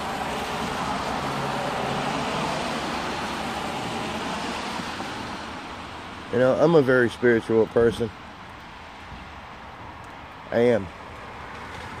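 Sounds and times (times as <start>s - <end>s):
vehicle passing by: 0.0s - 6.8s.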